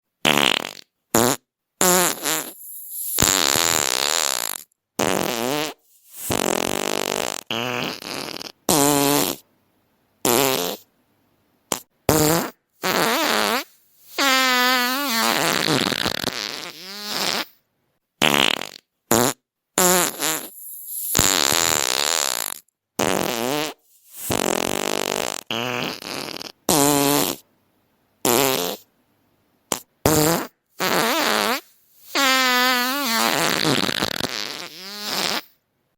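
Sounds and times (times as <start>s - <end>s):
fart sounds: 0.2s - 9.4s, 10.2s - 10.9s, 11.7s - 17.6s, 18.2s - 27.4s, 28.2s - 28.9s, 29.7s - 35.6s.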